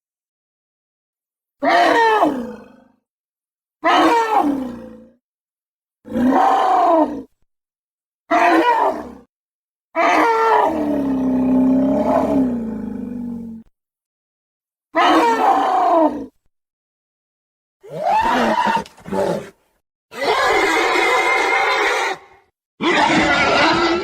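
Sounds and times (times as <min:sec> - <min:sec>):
dinosaur roaring calls: 0:10.0 - 0:13.7, 0:20.1 - 0:24.0.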